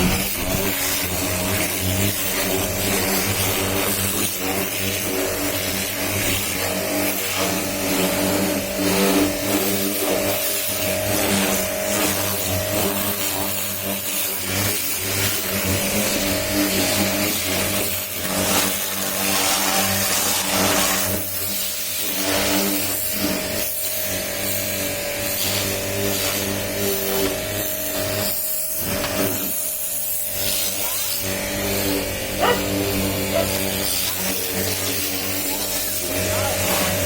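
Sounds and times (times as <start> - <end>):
water jet hissing: 0.0 - 3.6, 31.9 - 37.0
pressure washer motor hum: 0.0 - 37.0.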